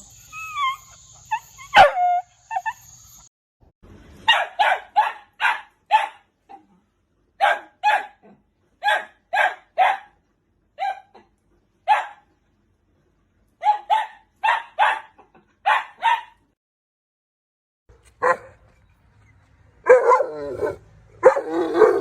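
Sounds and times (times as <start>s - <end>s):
dog yipping and barking: 0.0s - 3.1s, 4.2s - 6.3s, 7.4s - 8.2s, 8.8s - 10.2s, 10.8s - 11.2s, 11.9s - 12.2s, 13.6s - 16.4s, 18.2s - 18.6s, 19.2s - 22.0s.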